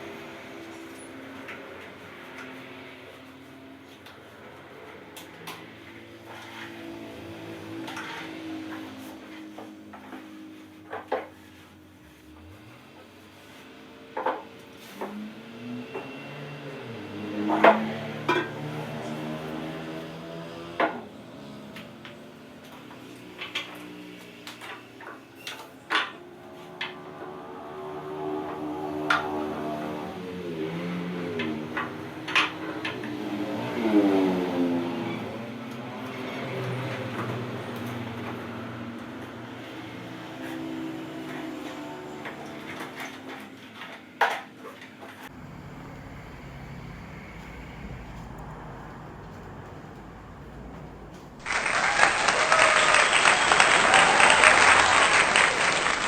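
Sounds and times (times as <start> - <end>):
quiet background music: 25.2 - 32.2
low room rumble: 45.3 - 51.5
appliance hum: 45.3 - 56.0.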